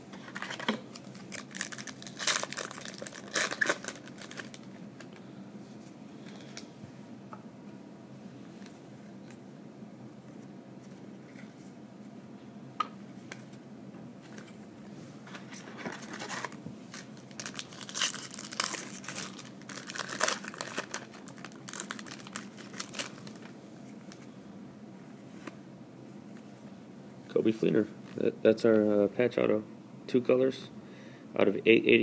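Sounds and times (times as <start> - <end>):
foil wrapper tearing and crinkling: 0.4 - 4.7, 16.0 - 23.5.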